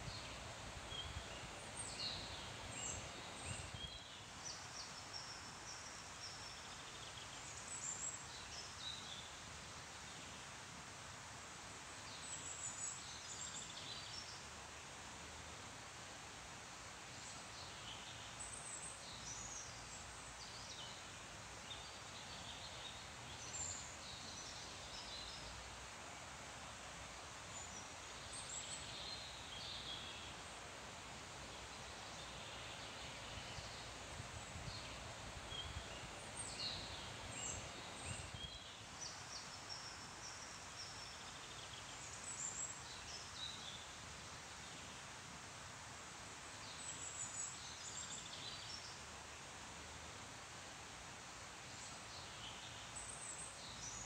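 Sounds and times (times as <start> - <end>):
leaves rustling in wind: 0.0 - 54.0
bird chirps and song: 34.6 - 43.8.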